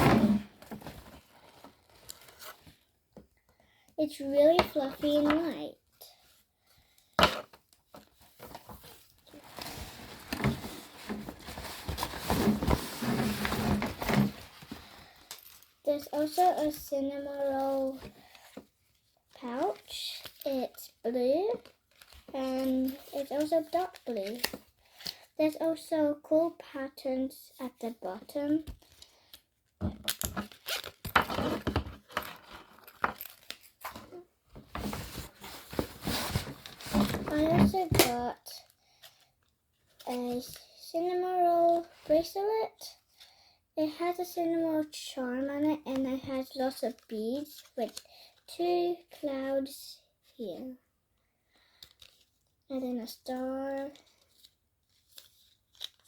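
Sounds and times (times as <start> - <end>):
items rustling and knocking: 0.0 - 3.4, 4.4 - 5.6, 7.2 - 18.8, 29.8 - 38.3.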